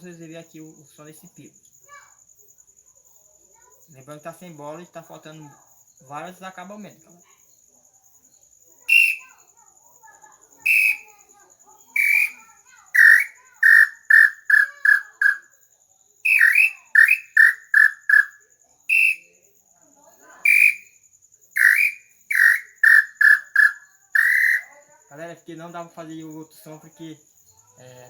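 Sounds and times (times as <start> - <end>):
bird-call whistle: 8.9 - 9.4, 10.7 - 11.2, 11.9 - 12.4, 13.0 - 15.5, 16.3 - 19.4, 20.5 - 21.0, 21.6 - 24.7.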